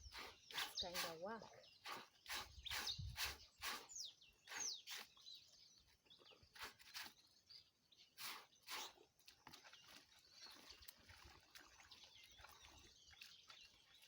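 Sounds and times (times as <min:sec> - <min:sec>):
small birds chirping: 0:00.0 - 0:14.0
wet cloth splashing in water: 0:09.2 - 0:14.0.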